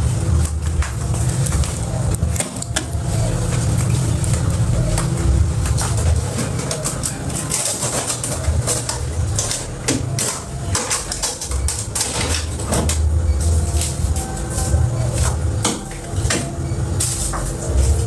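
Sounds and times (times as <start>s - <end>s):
utensils clicking on cookware: 3.8s - 13.1s.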